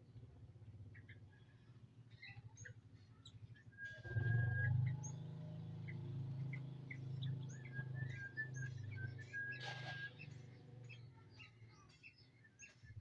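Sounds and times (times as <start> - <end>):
birds chirping: 0.6 - 13.0.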